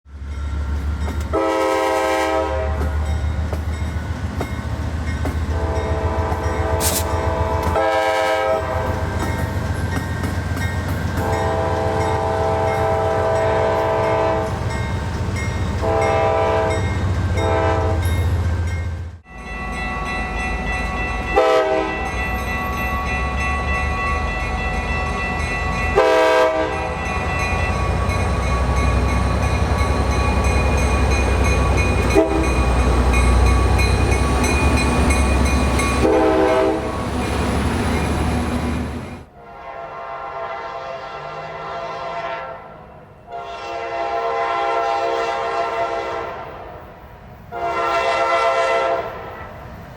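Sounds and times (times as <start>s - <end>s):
train rumbling past: 0.1s - 49.9s
locomotive air horn blasts: 1.3s - 2.9s, 5.5s - 9.1s, 11.2s - 14.6s, 15.8s - 18.2s, 21.3s - 22.1s, 25.9s - 28.1s, 31.6s - 32.8s, 36.0s - 36.9s, 39.3s - 46.8s, 47.5s - 49.5s.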